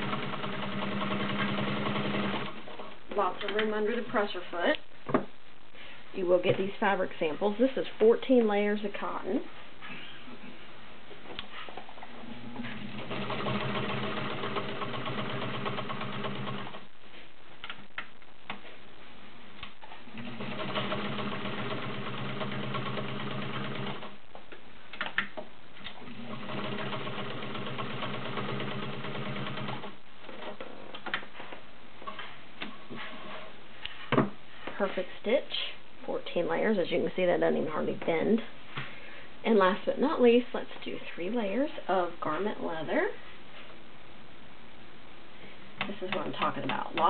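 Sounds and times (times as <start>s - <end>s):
sewing machine stitching: 0.0s - 2.6s, 12.6s - 16.8s, 20.1s - 24.2s, 26.0s - 30.0s.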